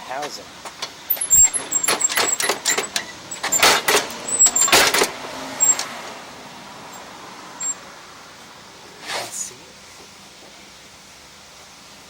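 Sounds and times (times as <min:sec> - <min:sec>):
snowblower housing rattling: 0:00.8 - 0:05.8.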